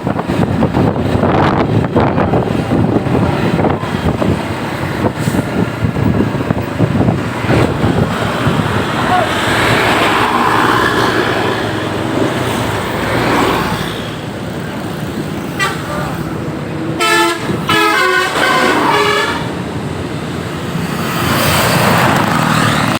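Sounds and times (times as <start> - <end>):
bus engines: 0.0 - 22.9
heavy road traffic: 0.0 - 22.9
bus multi-tone air horn: 15.5 - 16.2, 17.0 - 19.6.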